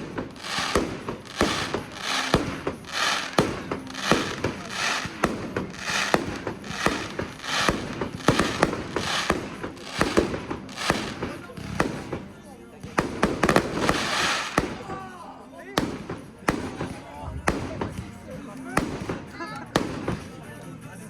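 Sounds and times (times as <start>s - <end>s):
hissing crackle: 0.0s - 12.2s, 13.0s - 15.0s
firework shells bursting: 0.0s - 12.3s, 13.0s - 15.0s.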